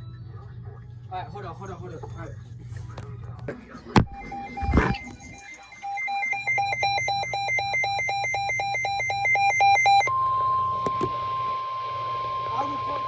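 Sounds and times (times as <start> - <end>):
rapid alert beeping: 4.0 - 10.1
steady warning alarm tone: 4.0 - 10.7.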